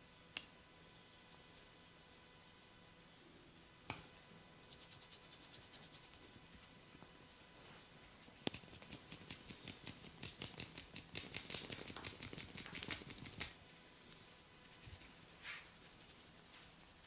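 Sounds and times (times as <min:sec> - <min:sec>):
fingers crackling through hair: 0:08.4 - 0:13.6.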